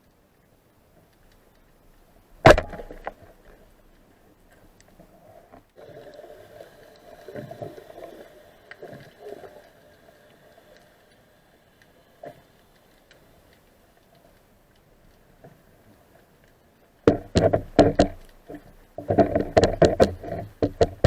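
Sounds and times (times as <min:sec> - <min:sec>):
sharp loud crack: 0:02.4 - 0:03.1.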